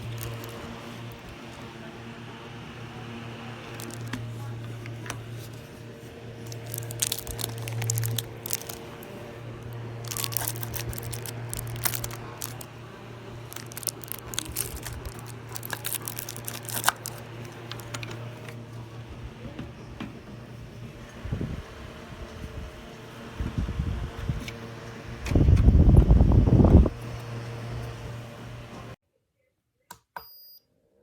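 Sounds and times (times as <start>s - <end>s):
crinkling and clicking: 0.0s - 1.7s, 3.6s - 5.7s, 6.4s - 18.6s
steady low hum: 0.0s - 29.0s.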